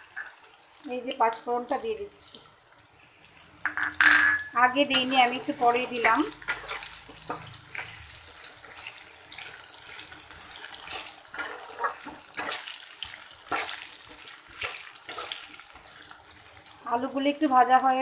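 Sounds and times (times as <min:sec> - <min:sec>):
potatoes sizzling in hot oil: 0:00.0 - 0:18.0
oil crackling and popping: 0:05.0 - 0:16.9.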